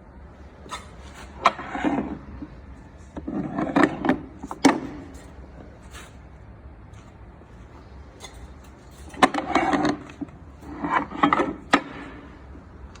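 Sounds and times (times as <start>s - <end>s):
low steady hum: 0.0s - 13.0s
metal knocking and rattling: 7.8s - 12.6s.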